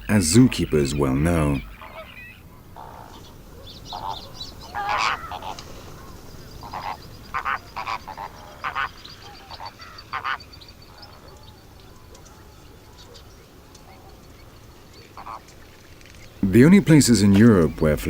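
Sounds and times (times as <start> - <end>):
flamingos honking: 0.0 - 11.2, 15.1 - 15.5, 16.4 - 18.0.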